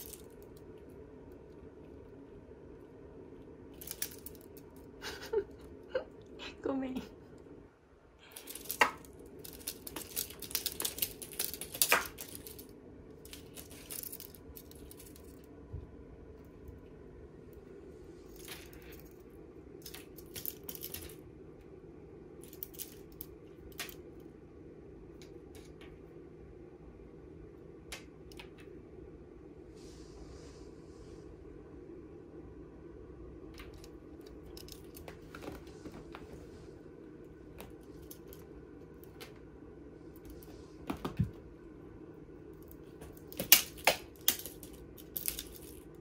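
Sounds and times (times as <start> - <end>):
cat toy rattling and clicking: 3.8 - 4.9, 8.3 - 15.4, 19.8 - 21.2.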